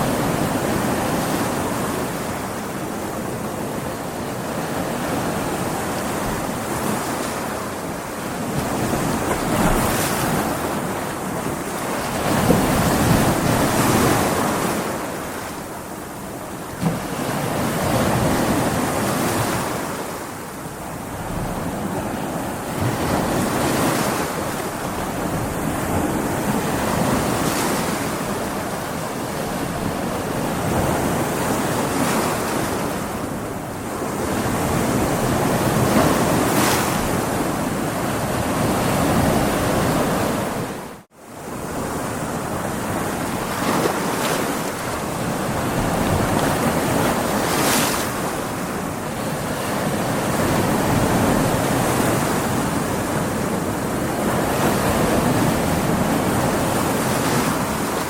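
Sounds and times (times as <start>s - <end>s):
waves surging and breaking: 0.0s - 58.0s
wind: 0.0s - 58.0s.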